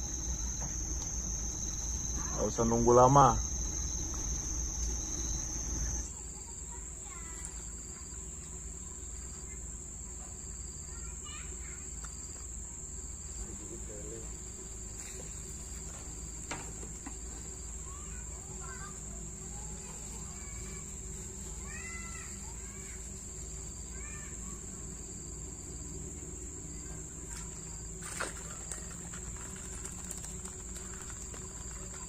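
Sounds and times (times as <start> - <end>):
low outdoor rumble: 0.0 - 7.1
insects droning: 0.0 - 32.0.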